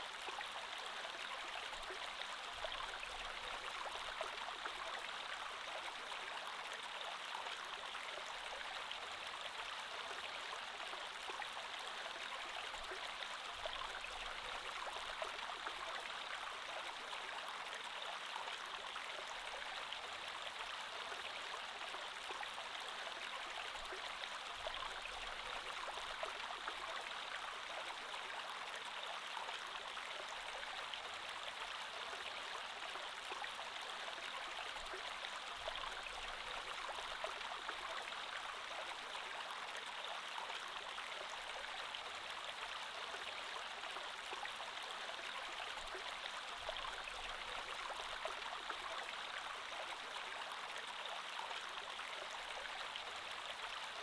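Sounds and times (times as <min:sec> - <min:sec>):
creek flowing over stones: 0:00.0 - 0:54.0.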